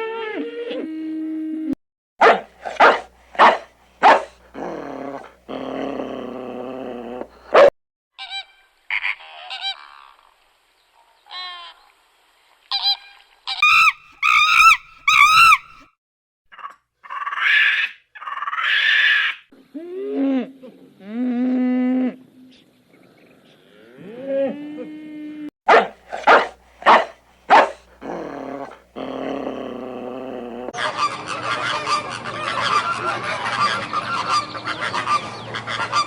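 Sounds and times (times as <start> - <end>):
chirping: 2.2 - 4.3
honking calls: 2.2 - 4.4
farm animal calls: 2.2 - 5.3, 25.7 - 28.8.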